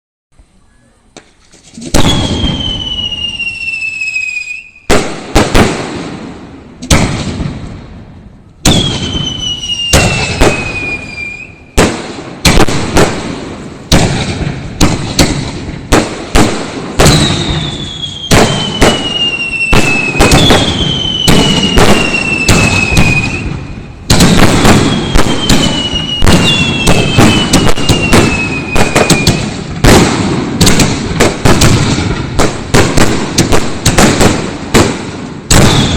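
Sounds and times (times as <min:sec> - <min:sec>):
descending firework whistles: 0:00.5 - 0:05.0, 0:08.6 - 0:11.8, 0:17.0 - 0:29.6, 0:35.5 - 0:35.9
firework shells bursting: 0:11.8 - 0:35.9.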